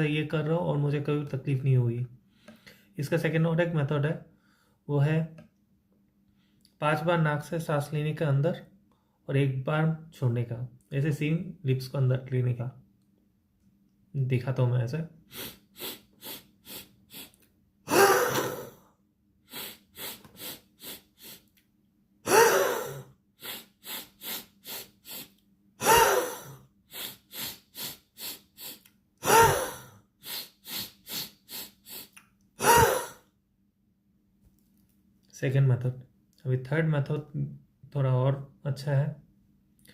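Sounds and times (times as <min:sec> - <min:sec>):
man sniffing through nose: 0:15.2 - 0:21.5, 0:22.3 - 0:33.2
man exhaling forcefully: 0:15.3 - 0:18.9, 0:19.5 - 0:21.4, 0:22.3 - 0:33.2.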